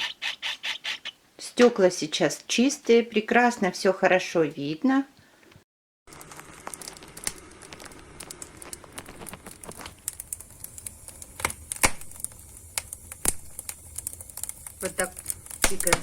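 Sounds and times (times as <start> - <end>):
firewood crackling: 0.0 - 1.2, 6.1 - 16.0
fire pops: 6.1 - 16.0.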